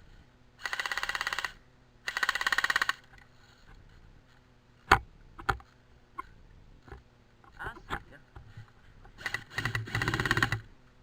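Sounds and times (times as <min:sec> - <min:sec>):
airsoft rifle full-auto bursts: 0:00.6 - 0:03.1, 0:09.2 - 0:10.6.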